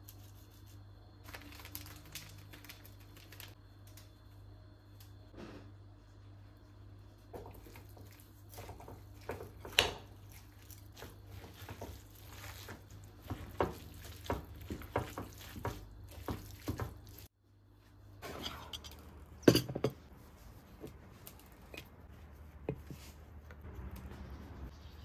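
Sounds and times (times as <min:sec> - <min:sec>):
low steady hum: 0:00.0 - 0:25.0
dishes knocking and clicking: 0:19.5 - 0:20.0.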